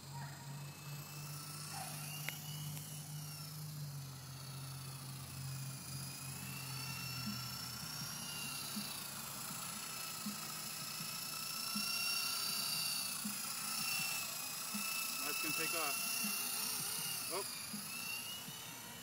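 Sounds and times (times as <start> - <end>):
rc helicopter motor whining: 0.0 - 19.0.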